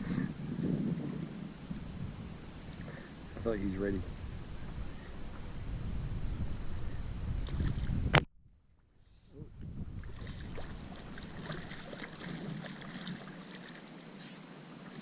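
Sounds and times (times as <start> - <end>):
wind rumble on microphone: 0.0 - 8.7, 9.3 - 13.5
water around a small boat: 0.0 - 15.0
light water splashing: 10.0 - 15.0
short hiss: 14.2 - 14.5.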